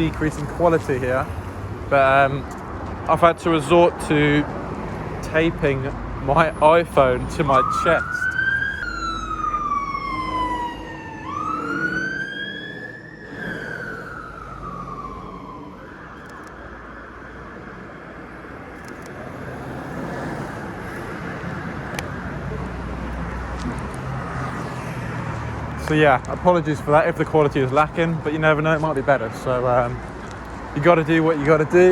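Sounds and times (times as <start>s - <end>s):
street noise: 0.0s - 31.9s
emergency siren wailing: 6.4s - 25.6s.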